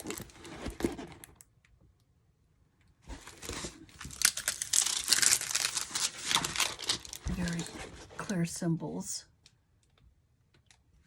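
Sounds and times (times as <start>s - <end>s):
canvas and cover crinkling: 3.1s - 8.3s.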